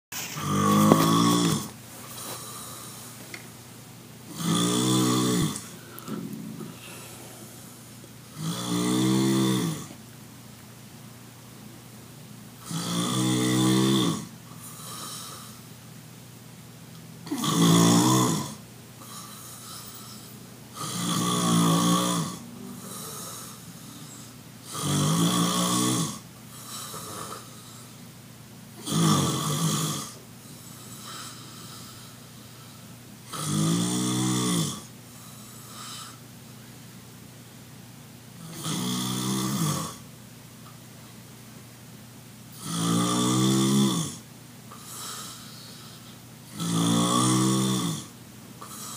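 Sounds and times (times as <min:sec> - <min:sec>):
man snoring loudly: 0:00.4 - 0:01.7, 0:04.3 - 0:07.4, 0:08.3 - 0:09.9, 0:12.6 - 0:15.6, 0:17.2 - 0:27.8, 0:28.8 - 0:30.2, 0:33.3 - 0:34.9, 0:38.4 - 0:40.0, 0:42.5 - 0:48.9.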